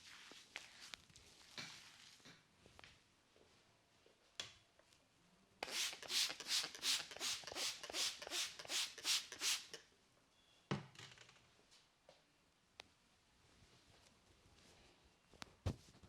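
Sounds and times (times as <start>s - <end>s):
hands rubbing over head: 5.7s - 9.8s.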